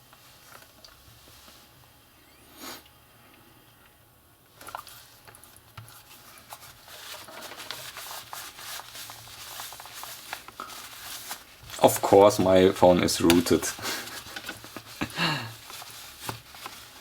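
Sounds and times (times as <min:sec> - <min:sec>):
rubbing with small clicks: 0:15.6 - 0:17.0.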